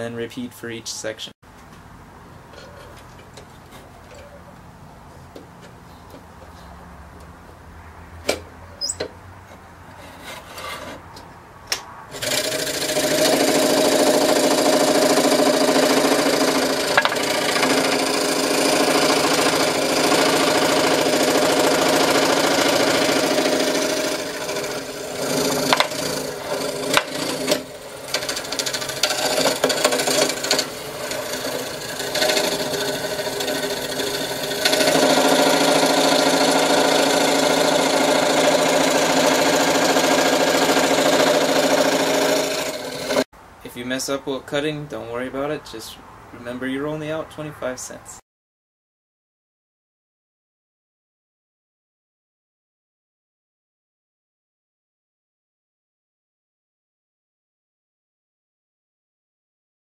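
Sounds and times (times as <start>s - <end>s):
scroll saw cutting metal: 12.1s - 43.3s.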